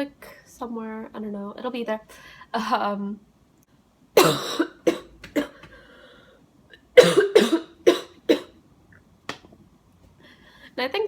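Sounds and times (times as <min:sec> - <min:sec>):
woman coughing: 0:04.2 - 0:05.6, 0:07.0 - 0:08.6.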